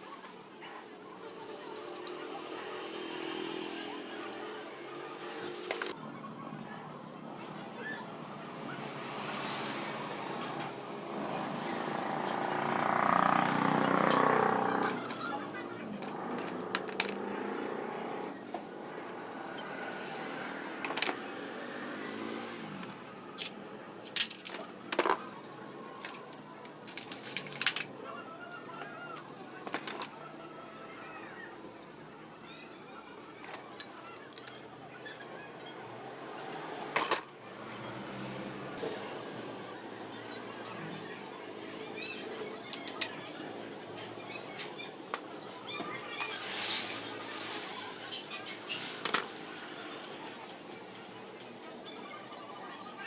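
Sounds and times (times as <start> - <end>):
metal tools clinking: 1.2 - 4.6, 9.4 - 9.7, 33.4 - 35.3.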